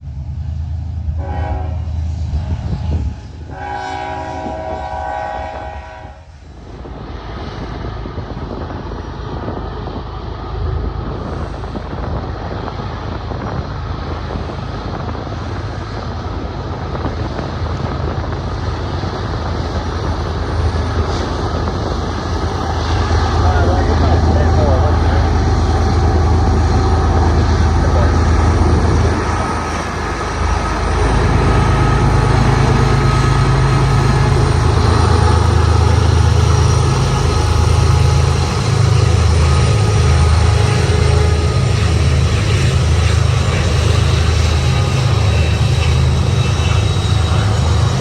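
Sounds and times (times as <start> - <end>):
diesel locomotive rumble: 0.0 - 48.0
rushing noise: 0.0 - 48.0
locomotive horn blasts: 1.2 - 1.9, 3.5 - 6.3.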